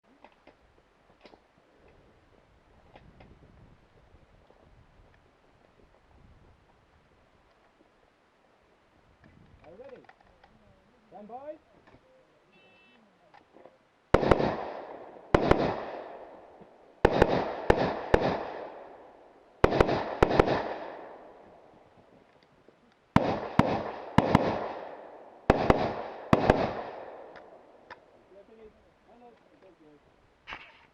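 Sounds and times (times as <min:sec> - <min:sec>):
rifle shots with echo: 0:14.1 - 0:21.7, 0:23.2 - 0:27.9.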